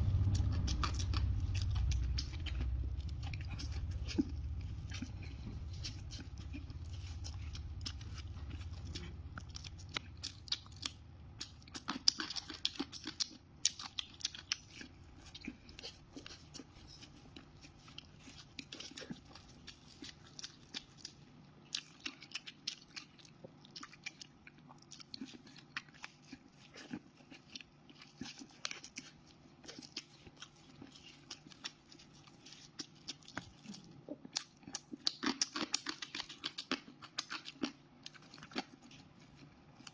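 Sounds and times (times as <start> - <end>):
low rumble: 0.0 - 11.7
chewing crunchy food: 0.0 - 39.9.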